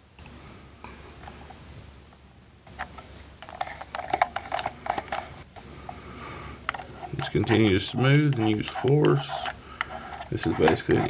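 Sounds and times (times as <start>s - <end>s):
tweezers scratching and tapping plastic: 8.2s - 11.0s.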